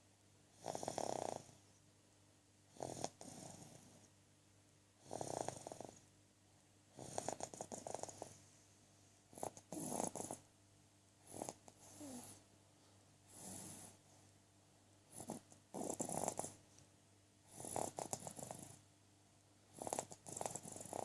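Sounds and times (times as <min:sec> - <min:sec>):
person snoring: 0:11.3 - 0:12.4, 0:15.2 - 0:16.6, 0:17.5 - 0:18.8, 0:19.8 - 0:21.0.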